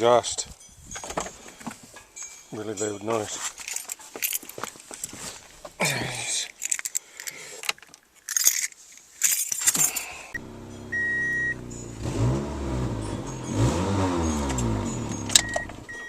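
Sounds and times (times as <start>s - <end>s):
keys jangling: 0.9s - 5.2s, 6.4s - 10.4s
short beep: 10.4s - 12.0s, 15.0s - 16.0s
car engine starting and revving: 10.4s - 16.0s
noisy leaking exhaust: 10.4s - 16.0s.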